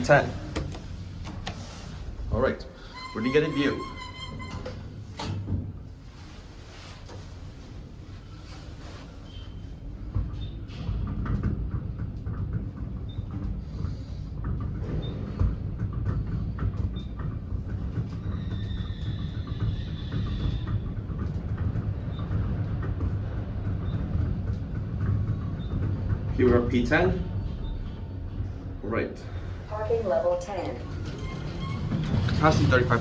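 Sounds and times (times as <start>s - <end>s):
elevator rumbling in shaft: 0.0s - 33.0s
rattles and clicks: 29.4s - 33.0s.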